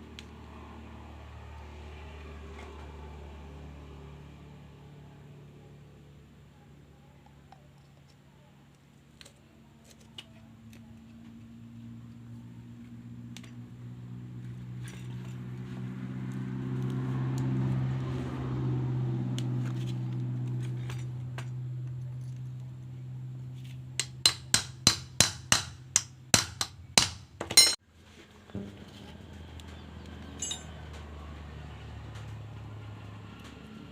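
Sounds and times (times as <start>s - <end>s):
engine hum: 0.0s - 8.2s, 9.4s - 27.0s, 27.6s - 33.9s
hammer striking metal: 24.0s - 27.8s, 30.4s - 30.7s.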